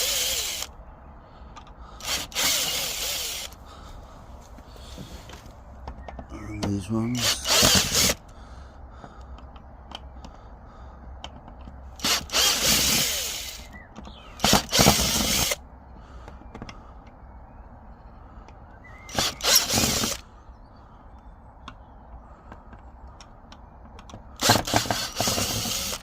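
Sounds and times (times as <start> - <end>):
power drill unscrewing screws: 0.0 - 0.7, 2.0 - 3.6, 7.2 - 8.2, 12.0 - 13.8, 14.4 - 15.6, 19.1 - 20.2, 24.4 - 26.0
small clicks and knocks: 9.0 - 10.4, 11.2 - 11.8, 16.2 - 17.2, 21.2 - 25.5.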